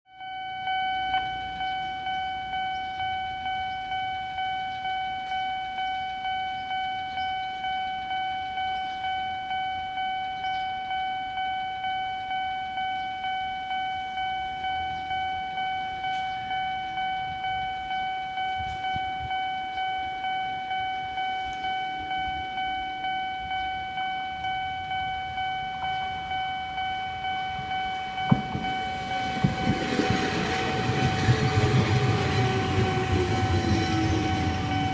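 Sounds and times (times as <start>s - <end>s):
level-crossing warning bell: 0.1s - 34.9s
train rumble approaching: 20.2s - 34.9s.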